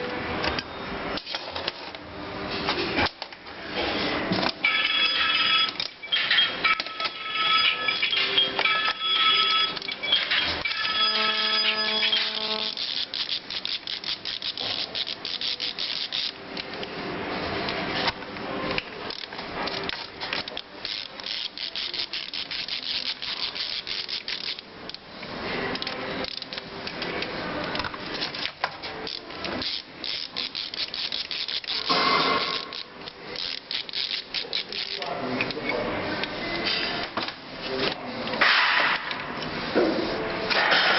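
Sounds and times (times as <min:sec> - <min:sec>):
metal parts scraping: 0:04.6 - 0:16.4, 0:19.1 - 0:24.7, 0:28.2 - 0:35.1.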